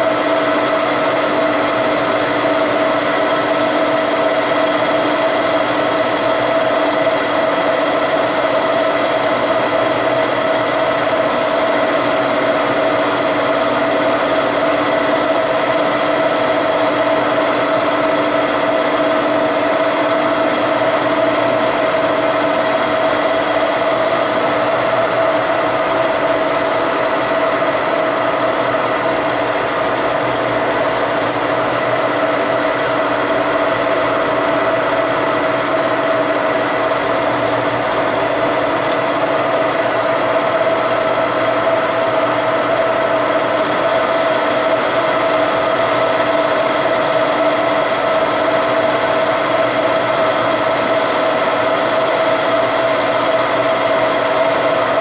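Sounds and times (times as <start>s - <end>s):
machine tool cutting steel: 29.8s - 31.6s.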